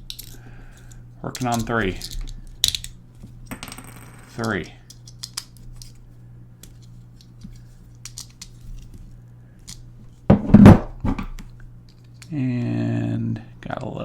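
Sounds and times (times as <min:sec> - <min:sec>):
plastic parts clicking and tapping: 0:04.4 - 0:05.9, 0:06.6 - 0:08.6.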